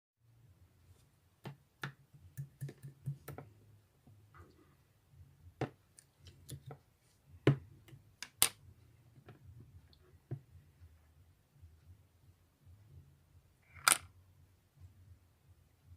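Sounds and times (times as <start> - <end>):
faint low hum: 0.2 - 15.9
clicks and taps of objects handled: 1.4 - 3.5.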